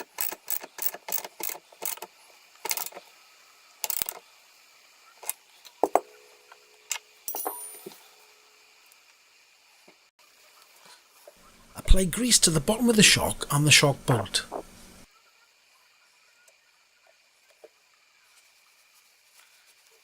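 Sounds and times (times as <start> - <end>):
ratchet wrench clicking: 0.0 - 3.0, 3.8 - 4.2
metal clinks and knocks: 7.3 - 8.0.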